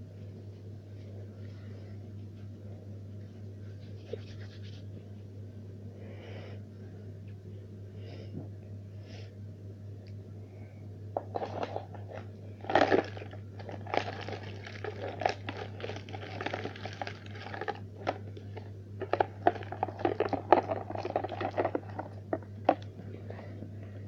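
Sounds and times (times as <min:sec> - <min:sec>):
steady low hum: 0:00.0 - 0:24.0
crinkling and clicking handling: 0:11.2 - 0:23.8.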